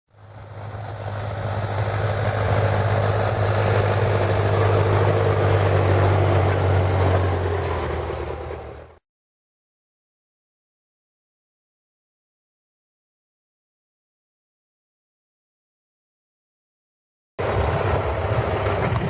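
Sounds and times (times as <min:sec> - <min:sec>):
tractor diesel engine running: 0:00.1 - 0:09.0, 0:17.4 - 0:19.0.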